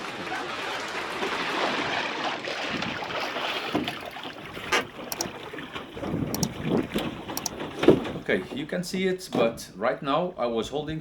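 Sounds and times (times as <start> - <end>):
water splashing and sloshing: 0.0 - 8.7
wind buffeting microphone: 4.4 - 8.6.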